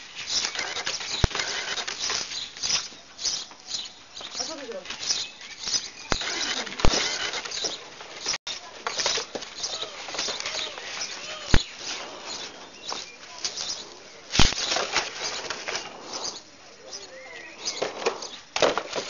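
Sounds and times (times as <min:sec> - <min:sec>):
scuffling scratchy rustle: 0:00.0 - 0:19.0
puppies squeaking and whimpering: 0:04.4 - 0:07.8.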